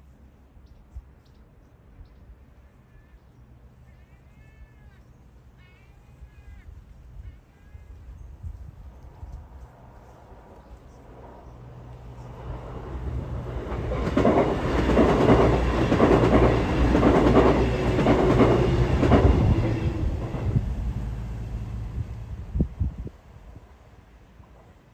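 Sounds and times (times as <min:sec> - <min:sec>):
train wheels clattering over rail joints: 0:13.4 - 0:21.2.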